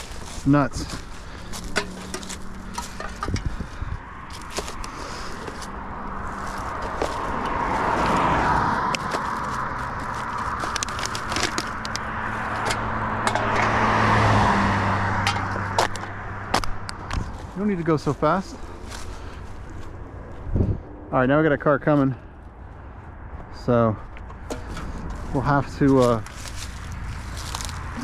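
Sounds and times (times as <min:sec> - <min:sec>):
cars passing on road: 0:00.0 - 0:28.0
plastic litter clicking and crackling: 0:08.8 - 0:12.8.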